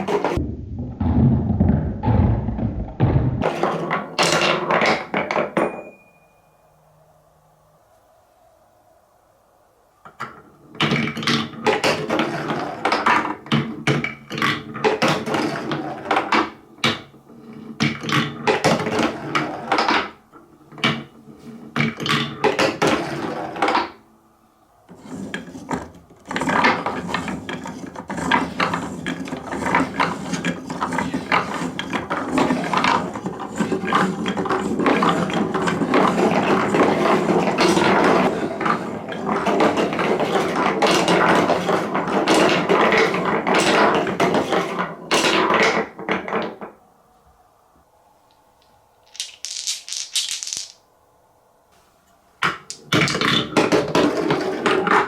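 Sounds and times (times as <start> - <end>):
marbles rattling along a track: 48.6 - 50.8.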